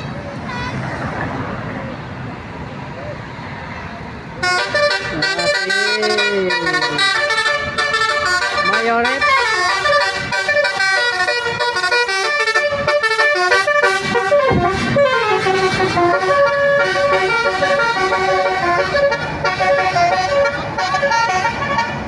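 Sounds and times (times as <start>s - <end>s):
multi-tone bus horn tune: 4.4s - 22.0s.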